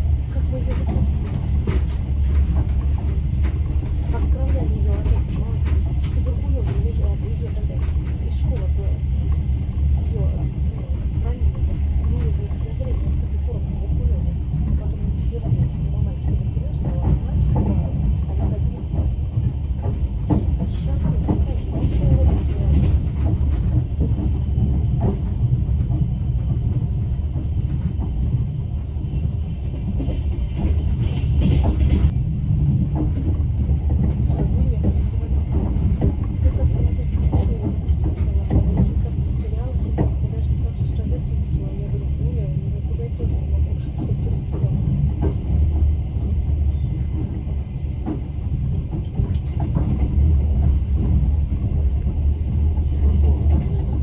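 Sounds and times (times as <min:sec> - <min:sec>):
train rumbling: 0:00.0 - 0:54.0.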